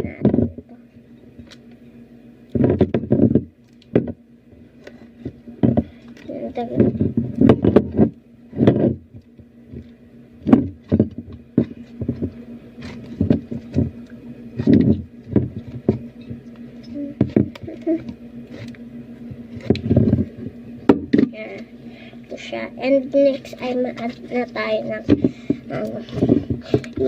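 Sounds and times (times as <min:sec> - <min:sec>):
low hum: 0:00.0 - 0:27.0
objects knocked and scraped: 0:02.6 - 0:04.2, 0:06.6 - 0:09.1, 0:09.7 - 0:14.0, 0:14.6 - 0:16.4, 0:19.5 - 0:21.3.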